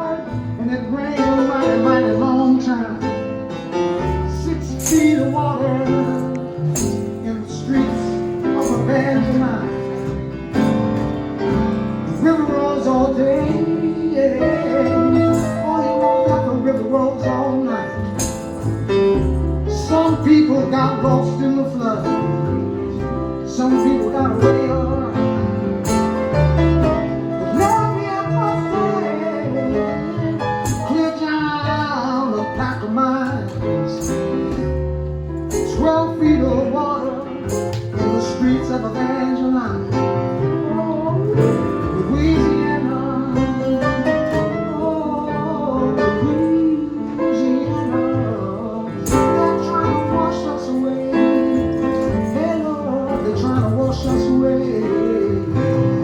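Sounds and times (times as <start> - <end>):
live band playing: 0.1 - 56.0
person singing: 12.1 - 18.5, 19.7 - 25.6, 26.8 - 34.8, 35.5 - 56.0.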